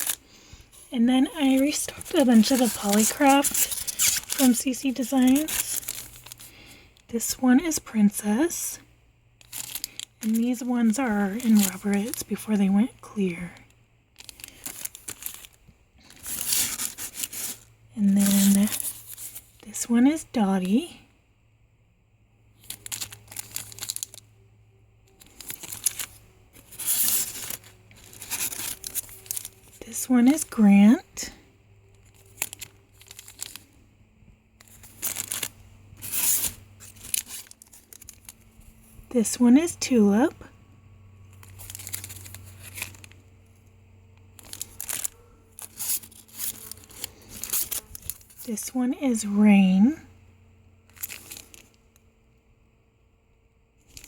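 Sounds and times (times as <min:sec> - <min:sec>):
plastic packaging crinkling: 0:00.0 - 0:08.6, 0:09.4 - 0:19.7, 0:22.6 - 0:24.3, 0:25.1 - 0:33.8, 0:34.6 - 0:39.0, 0:41.3 - 0:43.6, 0:44.3 - 0:48.7, 0:50.9 - 0:52.0, 0:53.8 - 0:54.0.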